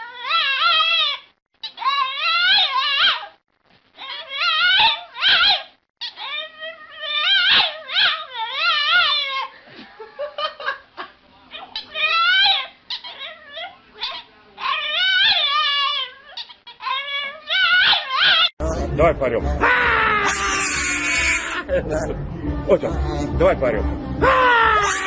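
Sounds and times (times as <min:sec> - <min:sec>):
animal high-pitched cries: 0:00.0 - 0:03.4, 0:04.0 - 0:09.5, 0:11.5 - 0:18.5, 0:19.6 - 0:21.7, 0:24.2 - 0:25.0.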